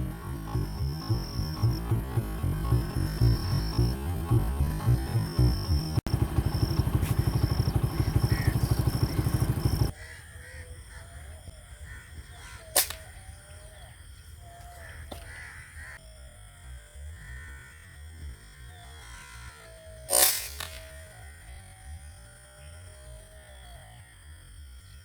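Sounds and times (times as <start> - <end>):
music with fast pulsing beat: 0.0 - 9.9
birds calling: 0.0 - 16.1
air gun shot: 20.1 - 21.0.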